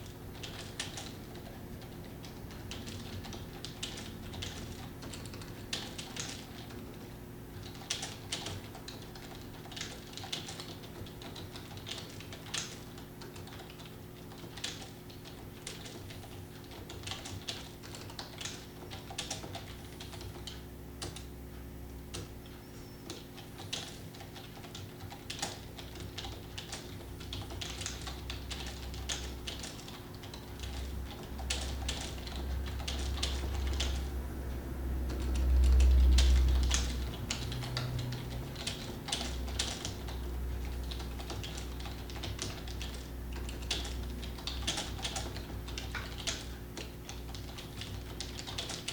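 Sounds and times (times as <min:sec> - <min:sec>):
keyboard keys clicking: 0:00.0 - 0:21.3, 0:22.1 - 0:34.2, 0:35.0 - 0:48.9.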